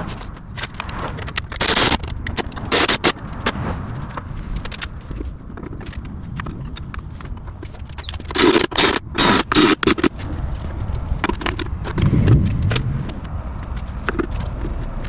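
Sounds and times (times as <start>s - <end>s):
steady low rumble: 0.0s - 7.9s
metal parts scraping and rattling: 0.0s - 10.2s.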